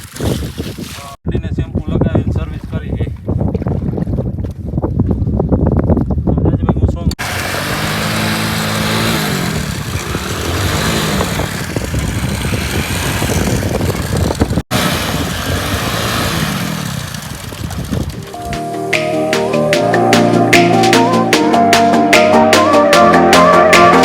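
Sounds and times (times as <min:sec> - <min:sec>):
wind noise: 0:00.0 - 0:18.6
motorcycle engine revving: 0:07.2 - 0:19.3.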